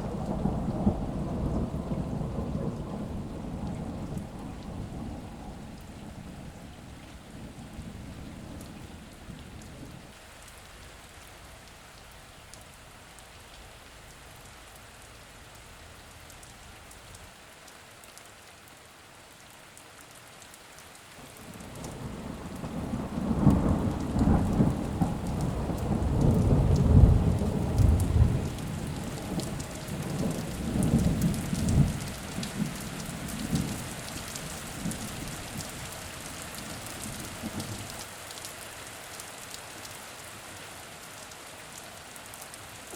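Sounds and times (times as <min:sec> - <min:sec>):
thunder rumbling: 0:00.0 - 0:10.1, 0:21.4 - 0:37.9
steady rain: 0:00.0 - 0:42.9.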